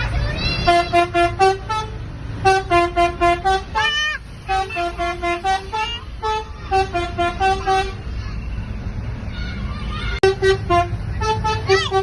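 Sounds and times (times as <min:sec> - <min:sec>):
low traffic rumble: 0:00.0 - 0:12.0
musical horn notes: 0:00.7 - 0:08.0.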